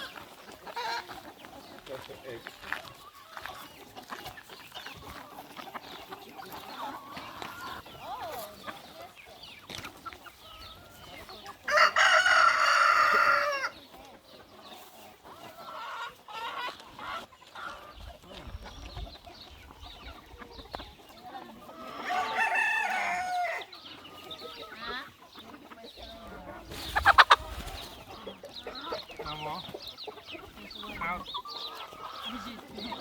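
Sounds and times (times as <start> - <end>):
hens clucking: 0.0 - 33.0
rooster crowing: 11.7 - 13.7, 22.1 - 23.7.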